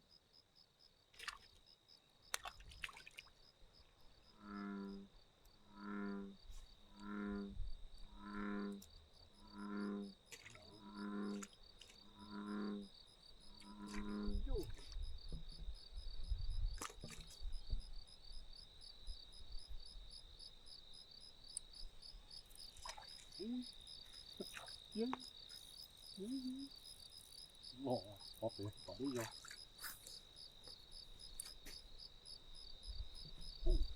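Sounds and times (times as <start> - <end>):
insects chirping drone: 3.4 - 33.9
low rumble on microphone: 13.9 - 16.8, 32.9 - 33.9.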